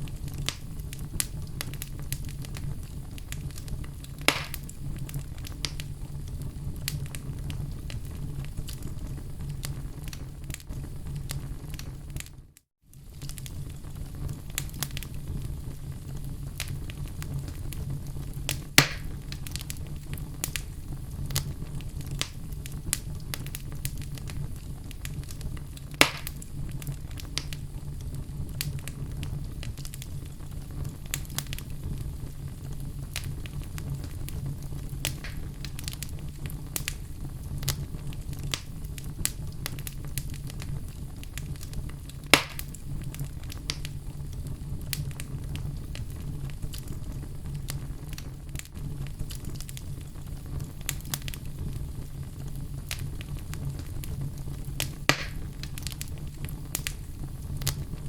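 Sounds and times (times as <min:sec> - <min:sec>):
fire rumbling: 0:00.0 - 0:58.0
small crackles of fire: 0:00.0 - 0:58.0
loud wood pops: 0:04.3 - 0:04.7, 0:18.8 - 0:19.1, 0:26.0 - 0:26.4, 0:35.1 - 0:35.5, 0:42.3 - 0:42.7, 0:55.1 - 0:55.4.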